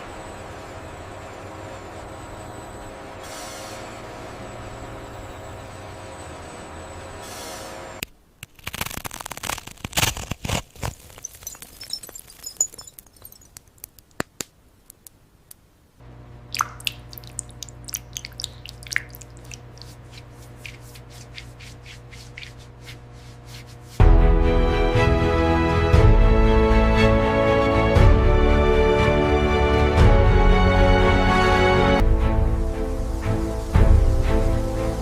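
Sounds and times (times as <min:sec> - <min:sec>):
sharp clicks and crackles: 0:08.0 - 0:15.6
machine hum: 0:16.0 - 0:25.5
music: 0:24.0 - 0:35.0.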